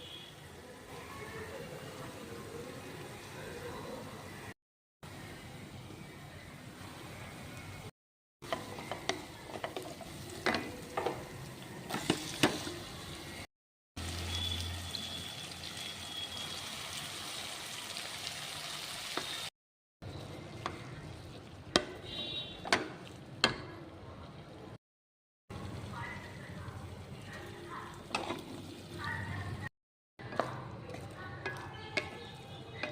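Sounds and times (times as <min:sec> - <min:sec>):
food sizzling in a pan: 0:14.0 - 0:19.5.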